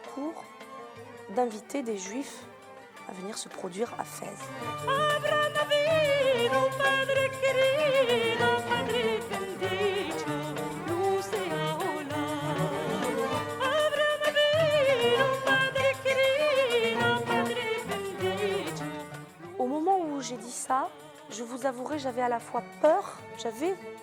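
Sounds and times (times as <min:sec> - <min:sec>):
person singing ornamented melody: 0:04.5 - 0:22.7.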